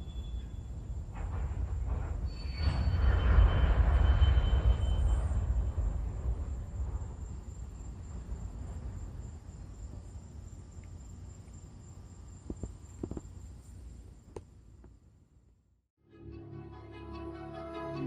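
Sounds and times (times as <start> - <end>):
insect trill: 0.0 - 1.0, 2.3 - 14.3.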